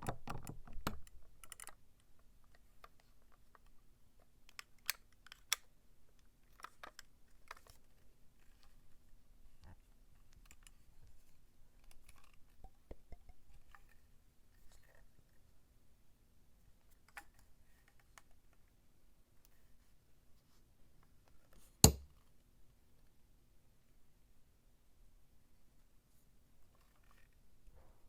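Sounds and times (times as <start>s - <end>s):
faint clicks and handling knocks: 0.0s - 9.0s, 9.6s - 15.2s.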